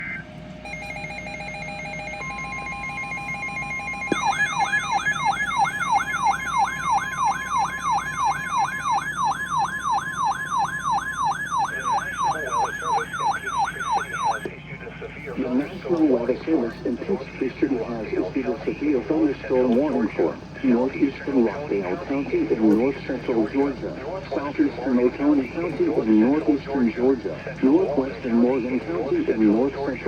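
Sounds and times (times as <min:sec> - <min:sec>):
siren-like alarm sweeping: 0:00.0 - 0:14.5
steady beep tones: 0:00.0 - 0:14.5.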